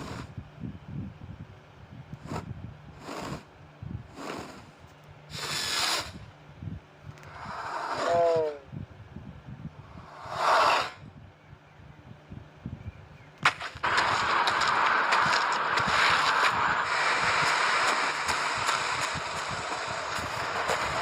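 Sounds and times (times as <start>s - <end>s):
hissing whoosh bursts: 5.3s - 6.2s, 7.2s - 8.6s, 9.9s - 11.0s, 13.8s - 21.0s.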